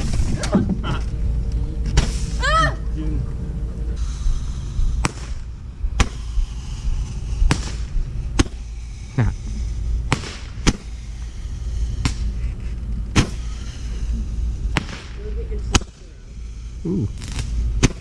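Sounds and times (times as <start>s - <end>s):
fireworks banging: 4.8s - 8.7s, 9.9s - 12.4s, 13.1s - 16.2s, 17.1s - 18.0s.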